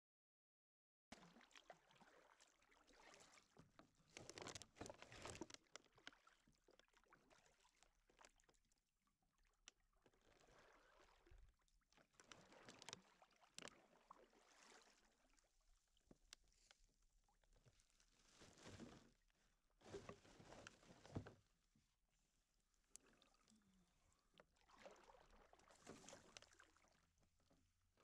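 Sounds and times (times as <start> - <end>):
paddle strokes splashing in water: 1.1 - 8.6, 10.1 - 15.6, 24.4 - 27.1.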